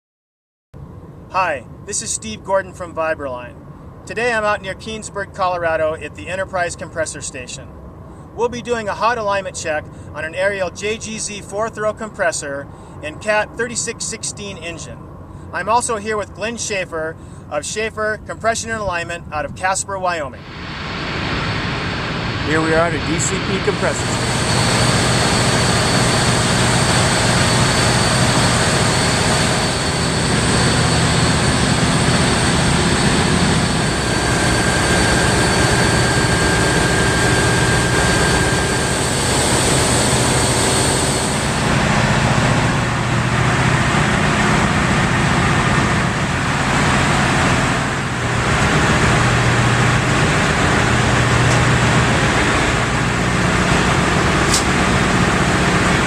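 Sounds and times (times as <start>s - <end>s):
compressor machinery drone: 6.0s - 11.0s, 12.6s - 16.5s, 20.0s - 56.0s
thin high whine: 20.2s - 56.0s.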